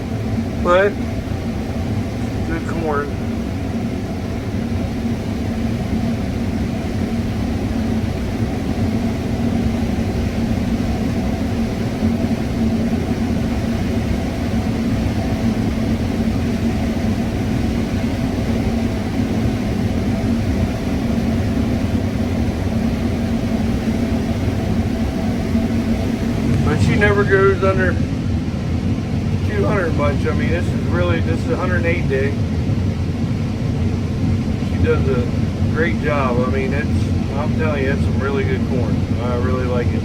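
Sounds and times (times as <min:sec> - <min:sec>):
combine harvester running: 0:00.0 - 0:40.0.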